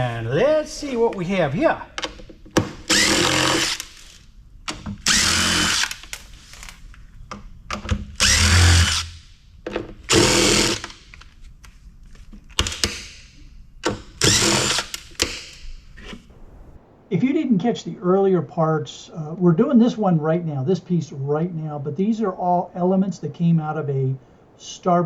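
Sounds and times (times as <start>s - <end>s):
cordless drill running: 2.9s - 4.1s, 5.1s - 5.9s, 8.2s - 9.0s, 10.1s - 10.8s.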